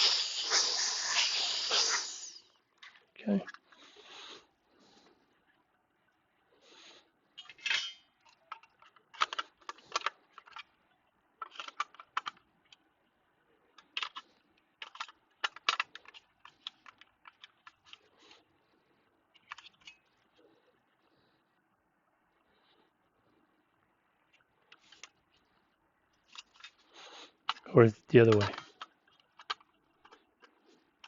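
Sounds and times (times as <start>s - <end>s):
small hard objects clicking: 27.5s - 30.2s.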